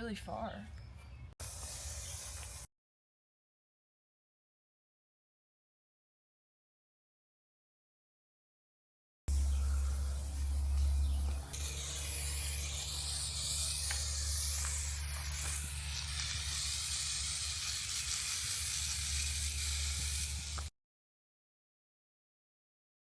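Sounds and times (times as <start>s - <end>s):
spray paint hissing: 1.4s - 2.7s, 9.3s - 20.7s
low hum: 9.3s - 20.7s.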